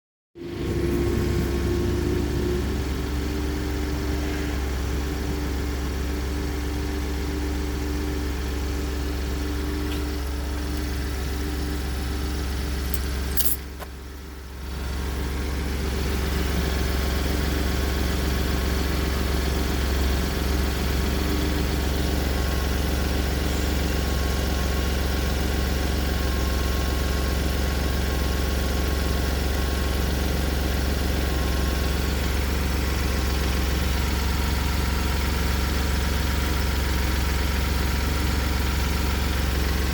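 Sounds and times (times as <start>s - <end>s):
car engine droning: 0.4s - 39.9s.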